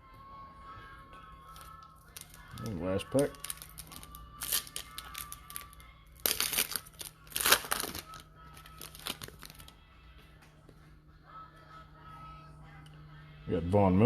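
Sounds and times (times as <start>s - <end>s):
card pack wrapper tearing and crinkling: 2.1s - 9.7s.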